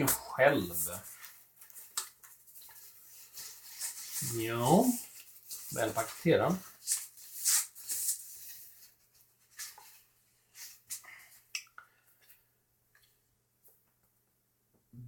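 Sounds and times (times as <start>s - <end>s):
packaging rustling and scraping: 0.0s - 11.0s.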